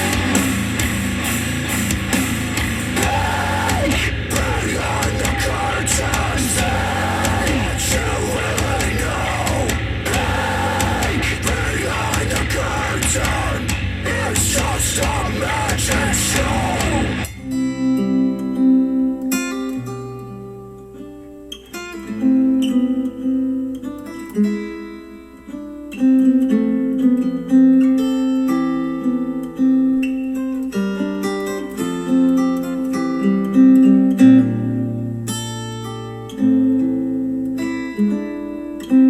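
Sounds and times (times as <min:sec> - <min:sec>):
rock song with singing: 0:00.0 - 0:17.5
acoustic guitar plucking: 0:00.0 - 0:39.0.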